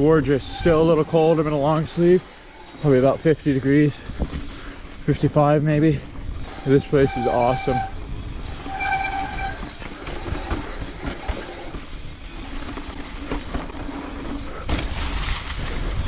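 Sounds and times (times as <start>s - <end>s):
high squeal: 0.0s - 4.5s, 6.4s - 12.7s
bike tyres rumbling on dirt: 0.0s - 16.0s.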